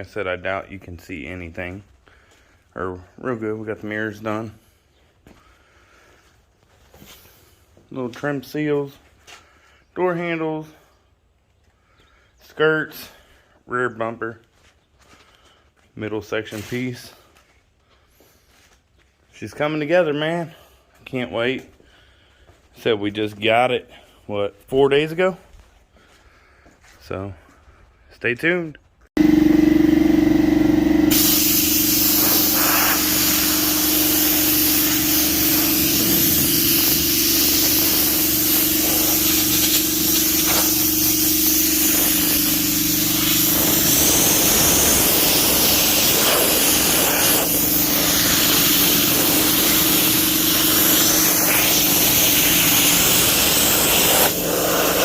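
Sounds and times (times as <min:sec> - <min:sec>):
motor hum: 0:29.2 - 0:55.0
compressed air hissing: 0:31.1 - 0:55.0.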